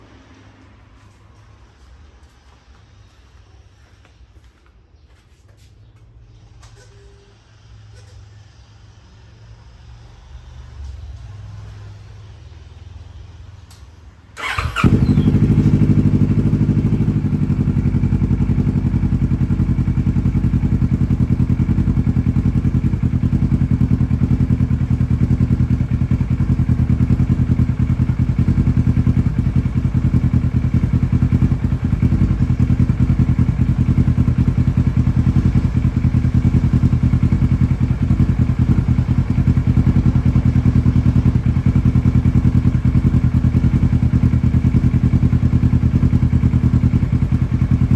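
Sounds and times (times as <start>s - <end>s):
motorcycle engine idling: 14.4s - 47.9s.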